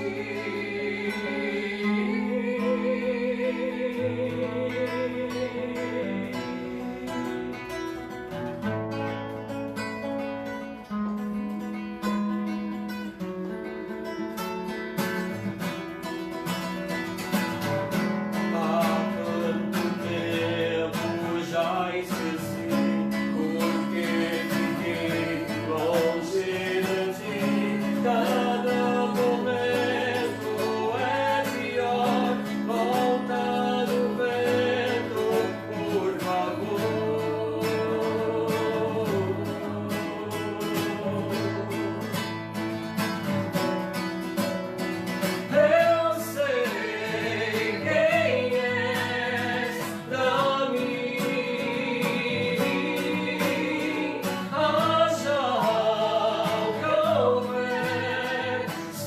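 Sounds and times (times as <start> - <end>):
person singing: 0.0 - 8.2, 18.3 - 43.0, 45.2 - 59.0
guitar strumming: 0.0 - 59.0.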